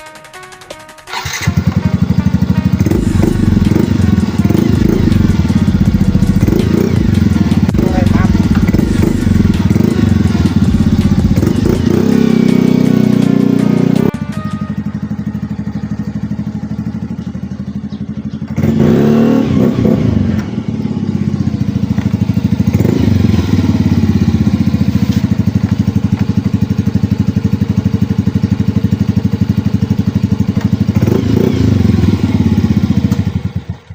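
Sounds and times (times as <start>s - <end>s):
scooter engine idling and revving: 0.0s - 33.9s.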